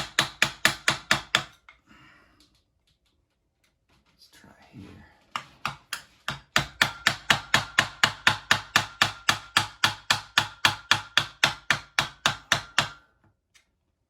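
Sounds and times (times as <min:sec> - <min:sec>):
hammer striking a screwdriver: 0:00.0 - 0:01.8, 0:05.4 - 0:13.1.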